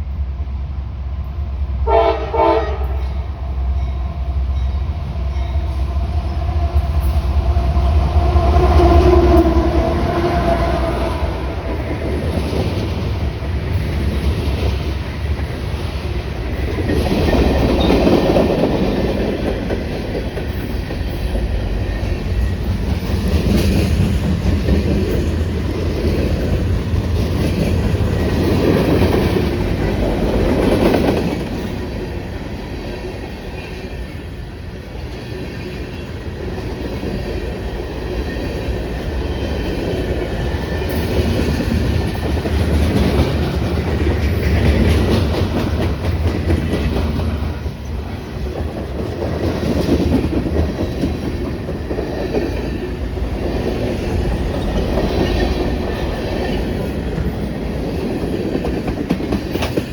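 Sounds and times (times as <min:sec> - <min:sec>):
freight train wheels rumbling: 0:00.0 - 0:59.9
wheels clacking over rail joints: 0:34.9 - 0:59.9.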